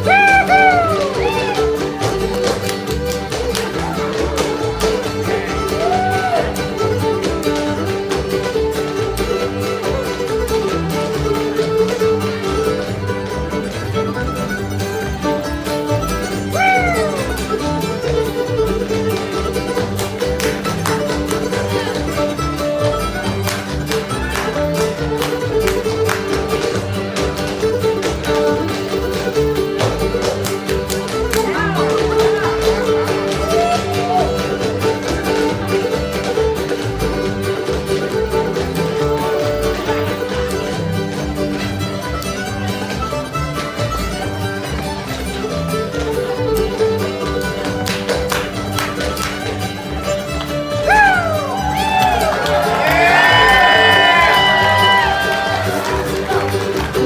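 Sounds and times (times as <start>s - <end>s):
fiddle: 0.0s - 57.0s
plucked strings: 0.0s - 57.0s
strummed guitar: 0.0s - 57.0s.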